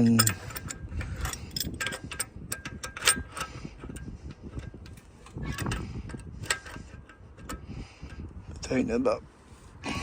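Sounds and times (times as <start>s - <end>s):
wrench clicking on metal fitting: 0.0s - 4.8s.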